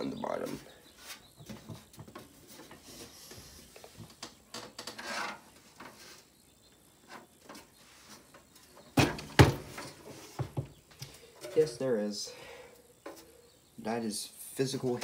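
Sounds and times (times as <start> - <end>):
sharp knocks: 9.0 - 9.8.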